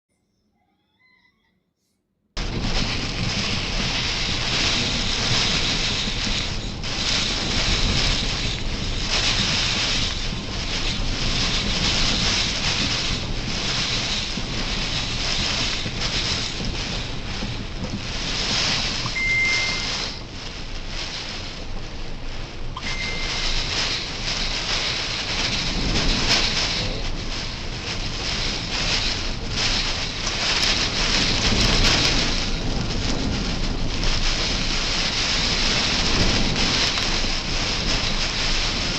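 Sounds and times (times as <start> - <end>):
gusting wind: 2.4 - 38.9
heavy rain: 2.4 - 38.9
wind buffeting microphone: 2.4 - 38.9
short high tones: 19.1 - 20.1, 22.8 - 23.5.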